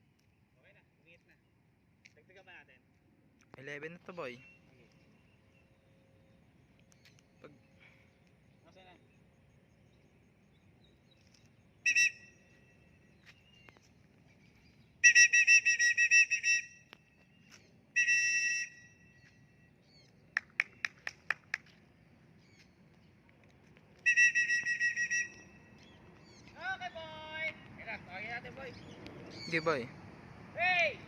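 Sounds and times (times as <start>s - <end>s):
pea whistle blasts and trills: 11.8s - 12.6s, 15.0s - 17.1s, 18.0s - 19.2s, 24.0s - 25.8s.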